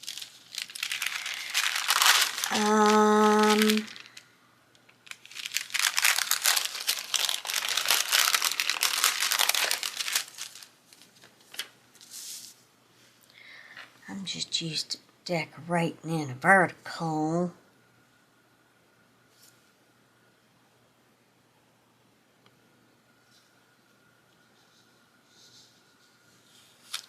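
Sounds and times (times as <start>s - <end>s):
paper crinkling and rustling: 0.0s - 4.2s, 5.0s - 12.6s, 25.4s - 27.0s.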